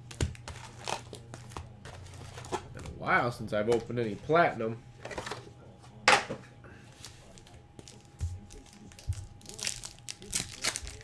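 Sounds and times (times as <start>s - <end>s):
foil wrappers crinkling and tearing: 0.0s - 3.0s, 6.9s - 11.0s.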